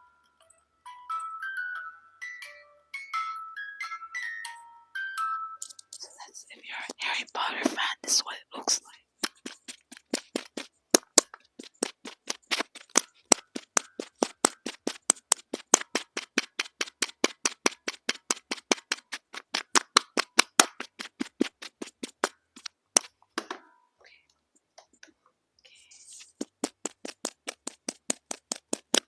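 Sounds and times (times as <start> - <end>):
tapping on small hard object: 9.2 - 23.6, 26.4 - 29.0.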